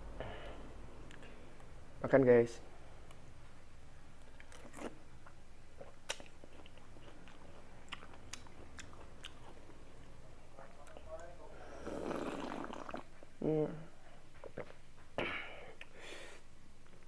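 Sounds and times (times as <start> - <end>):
faint steady hum: 0.0 - 17.0
crunchy chewing: 4.2 - 13.0.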